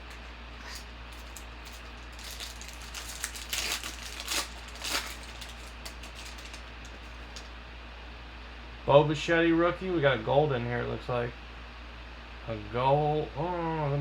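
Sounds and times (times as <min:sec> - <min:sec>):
wrapper crinkling and rustling: 0:00.0 - 0:07.5.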